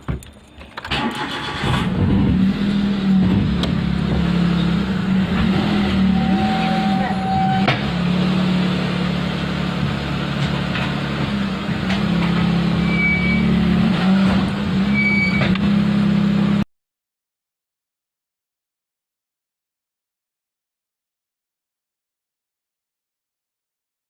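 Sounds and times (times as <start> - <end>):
car engine and road hum: 0.0 - 16.6.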